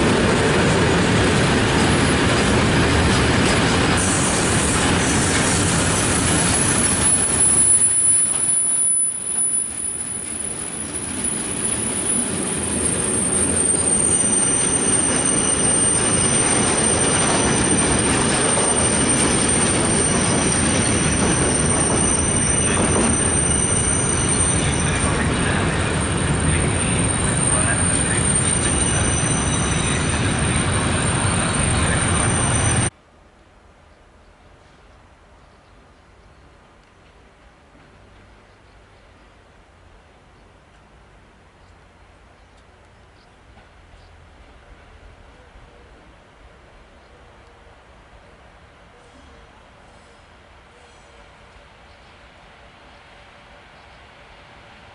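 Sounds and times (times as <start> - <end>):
train wheels rumbling on rails: 0.0 - 33.0
high-pitched wheel squeal: 4.0 - 32.9.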